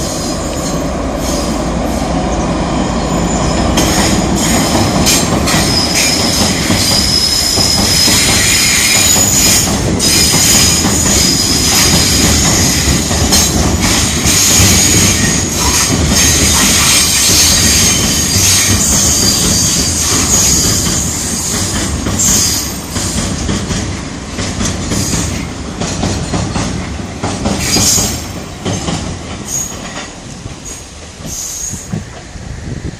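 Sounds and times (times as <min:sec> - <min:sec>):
train wagons rumbling over bridge: 0:00.0 - 0:32.9
wheels clacking over rail joints: 0:03.4 - 0:32.3
wheel squeal: 0:14.3 - 0:21.1.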